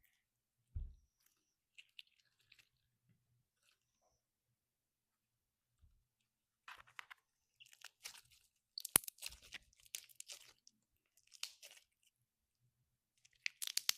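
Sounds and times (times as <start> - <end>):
slime crackling and popping: 7.6 - 12.1, 13.2 - 13.9.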